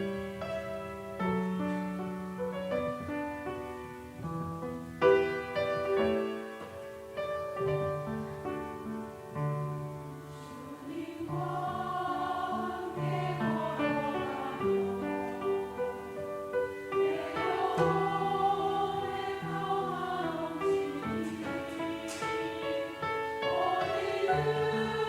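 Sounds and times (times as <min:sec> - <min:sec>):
piano accompaniment: 0:00.0 - 0:25.0
choir singing: 0:10.2 - 0:25.0.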